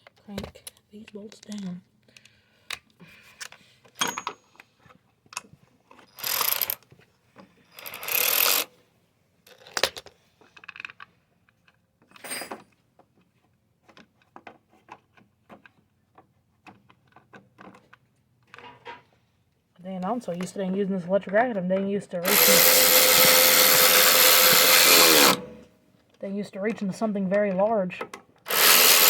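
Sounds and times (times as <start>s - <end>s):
hand ratchet clicking: 6.2s - 6.8s, 7.8s - 8.7s, 22.2s - 25.6s, 28.4s - 29.0s
noisy bursts: 22.2s - 25.7s.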